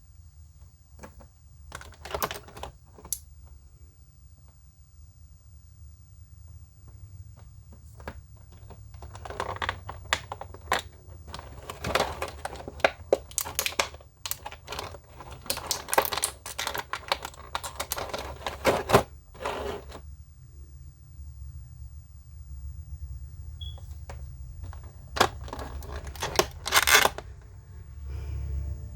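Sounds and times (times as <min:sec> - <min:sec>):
steady low hum: 0:00.0 - 0:28.9
hands handling plastic packaging: 0:07.9 - 0:20.0, 0:24.1 - 0:27.4.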